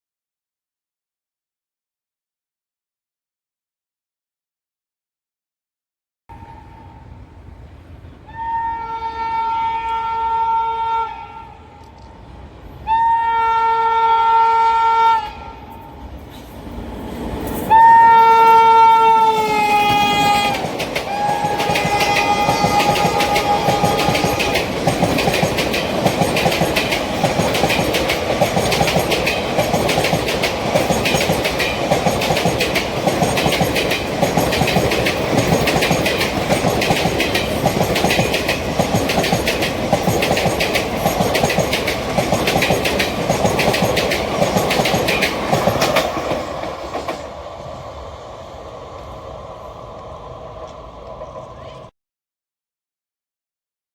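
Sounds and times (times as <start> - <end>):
shrill locomotive horn blasts: 8.3 - 11.9, 12.8 - 16.0, 17.6 - 24.9
train coaches clacking over rail joints: 18.3 - 47.3.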